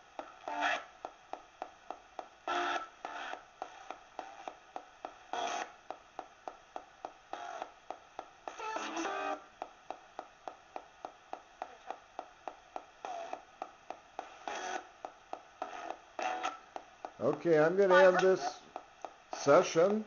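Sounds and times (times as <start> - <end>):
radio static hissing: 2.2 - 20.0
snatches of radio broadcast: 5.3 - 5.8, 8.5 - 9.5, 13.0 - 13.5, 14.2 - 14.9, 15.6 - 20.0.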